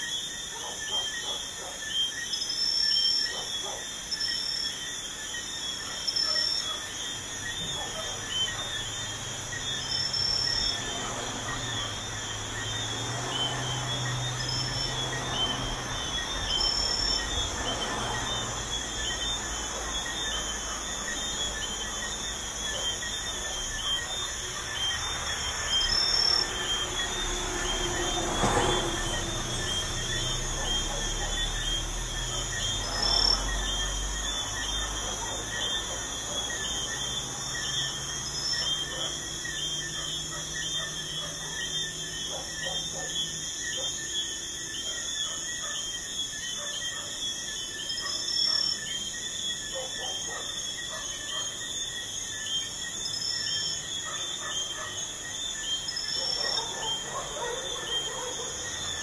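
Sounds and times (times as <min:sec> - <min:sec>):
crickets chirping: 0:00.0 - 0:59.0
low traffic rumble: 0:07.5 - 0:43.6.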